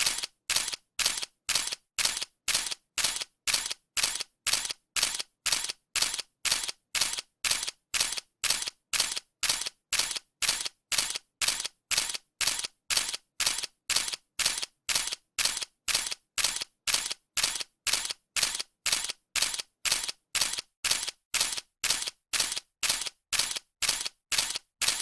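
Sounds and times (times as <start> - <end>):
camera shutter clicking: 0.0 - 25.0.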